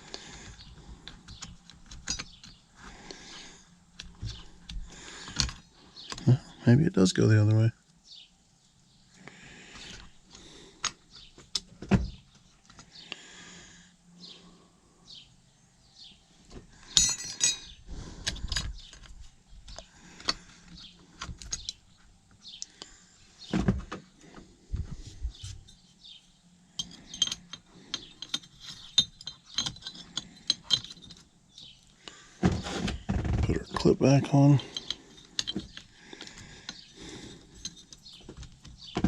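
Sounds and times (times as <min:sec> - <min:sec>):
tools clicking and knocking: 0:01.0 - 0:02.6, 0:16.9 - 0:21.8, 0:26.8 - 0:32.0, 0:34.6 - 0:39.0
jangling rattle: 0:16.9 - 0:19.1, 0:26.8 - 0:31.8, 0:34.5 - 0:38.9.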